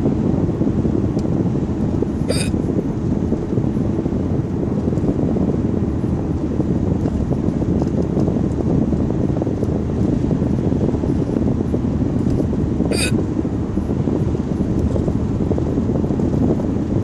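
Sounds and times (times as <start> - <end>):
low background rumble: 0.0 - 17.0
person hiccuping: 2.3 - 2.5, 12.9 - 13.2.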